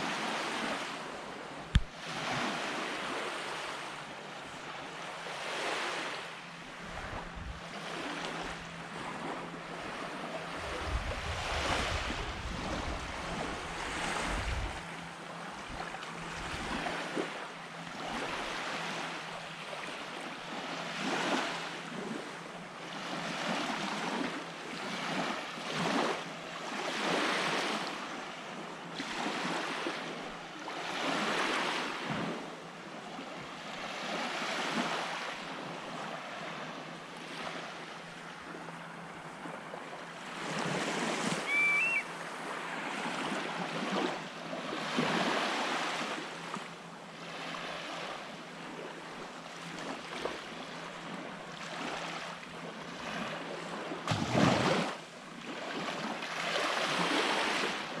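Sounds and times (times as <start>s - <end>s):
small waves washing on sand: 0.0s - 58.0s
wind buffeting microphone: 10.6s - 14.8s.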